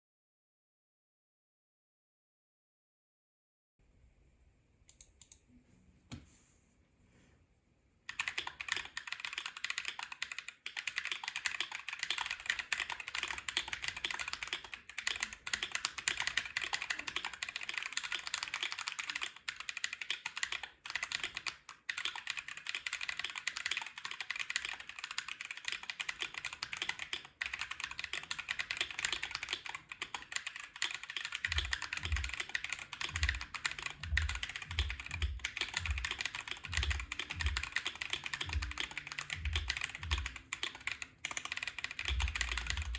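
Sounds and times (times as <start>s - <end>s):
fast typing on mechanical keyboard: 8.1s - 42.9s
deeper keyboard thumps: 31.5s - 32.4s.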